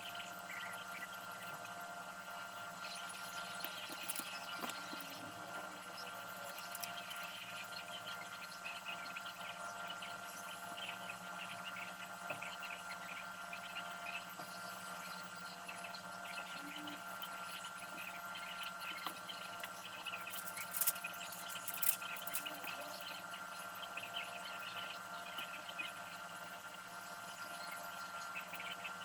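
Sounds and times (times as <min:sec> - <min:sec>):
electrical hum with high whine: 0:00.0 - 0:29.0.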